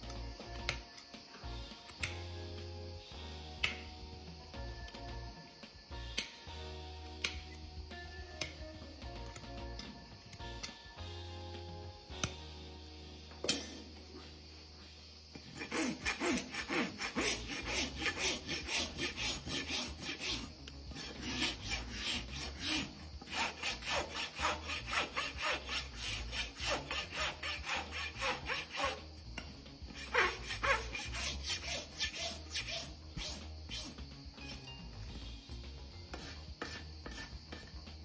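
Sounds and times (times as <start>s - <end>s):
rasp filing hoof: 15.3s - 34.7s, 36.0s - 38.0s.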